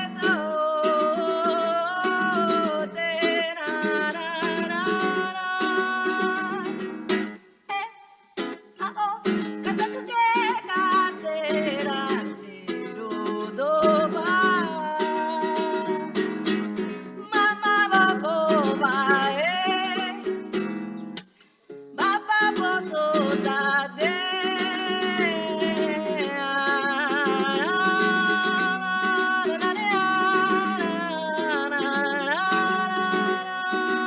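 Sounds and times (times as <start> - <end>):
person singing with vibrato: 0.0 - 20.8, 22.0 - 34.0
plucked-string accompaniment: 8.4 - 34.0.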